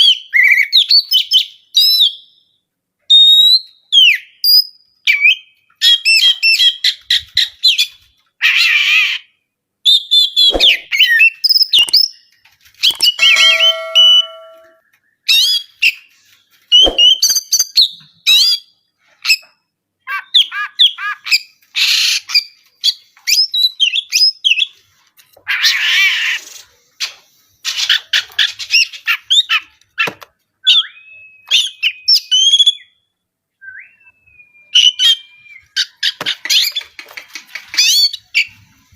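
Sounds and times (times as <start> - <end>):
bird singing whistles and chirps: 16.7 - 18.7, 30.6 - 33.0, 33.6 - 35.8.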